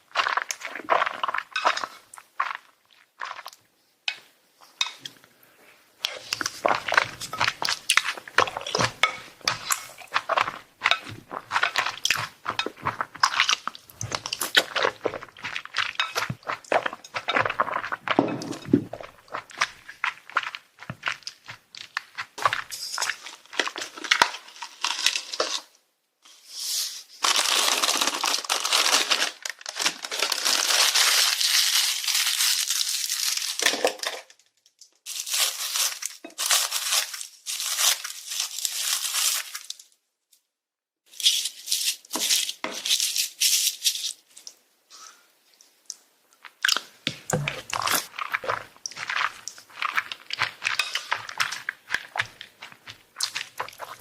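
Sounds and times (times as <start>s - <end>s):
chewing and crunching: 0.0s - 3.6s, 6.0s - 25.4s, 46.4s - 54.0s
crinkling: 0.0s - 25.8s, 26.7s - 40.0s, 41.1s - 54.0s.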